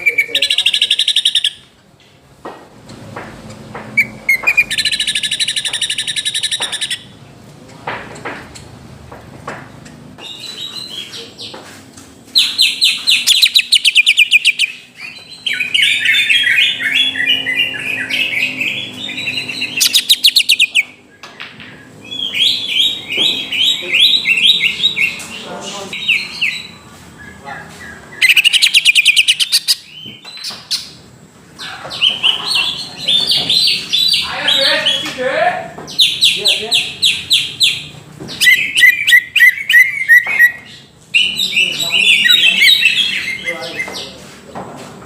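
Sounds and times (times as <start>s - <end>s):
leafbird chattering trills: 0.0s - 1.6s, 4.0s - 7.1s, 12.3s - 21.0s, 22.0s - 31.0s, 31.6s - 44.2s.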